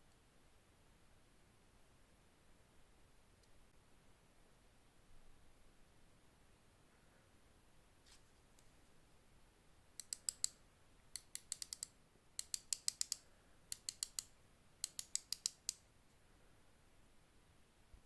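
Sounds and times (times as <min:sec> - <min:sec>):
watch crown clicking: 0:10.0 - 0:10.6, 0:11.2 - 0:15.8.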